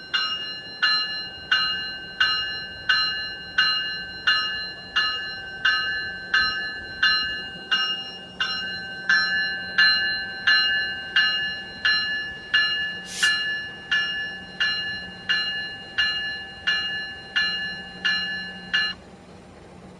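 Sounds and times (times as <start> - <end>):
locomotive bell ringing: 0.0 - 19.9
short hiss: 13.1 - 13.4.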